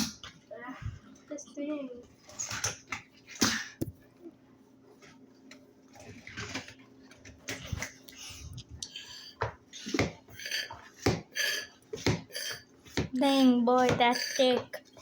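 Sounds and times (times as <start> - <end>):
utensil scraping against bowl: 9.8 - 15.0.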